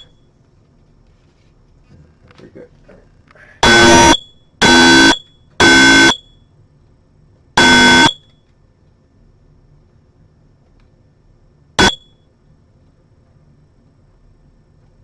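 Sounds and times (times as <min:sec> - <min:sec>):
smoke detector alarm beeps: 0:03.6 - 0:06.4, 0:07.6 - 0:08.3, 0:11.8 - 0:12.2.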